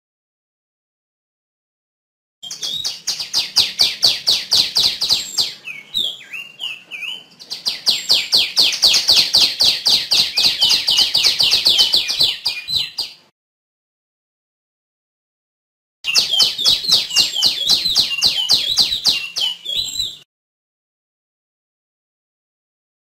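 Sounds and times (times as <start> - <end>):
songbird chattering trill: 2.4 - 13.2, 16.1 - 20.2.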